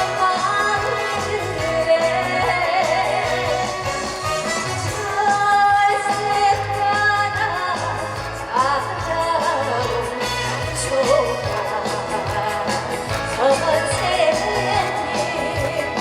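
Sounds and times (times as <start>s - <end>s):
amplified backing track: 0.0s - 16.0s
woman singing: 0.0s - 16.0s.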